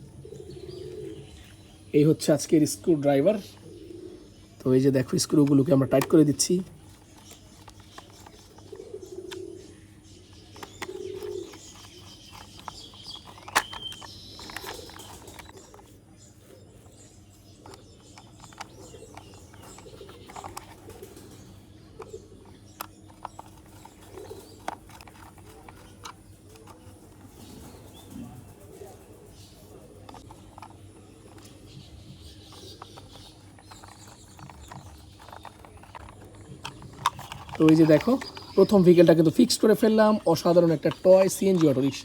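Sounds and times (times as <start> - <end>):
bird cooing: 0.0 - 42.0
screwdriver clicks and taps: 10.6 - 15.5.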